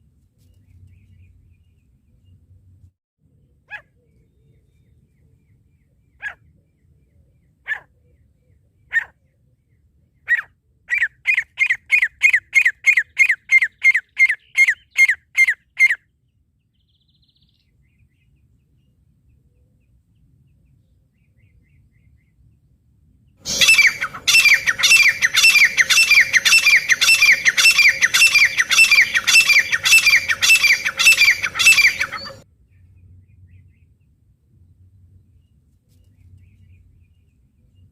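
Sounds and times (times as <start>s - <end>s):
francolin calling: 23.4s - 32.4s.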